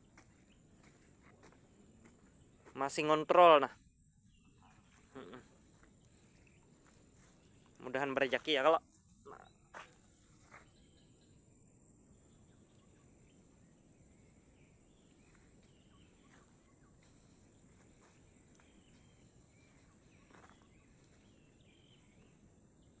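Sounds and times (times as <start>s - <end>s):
short chirping calls: 12.2s - 23.0s.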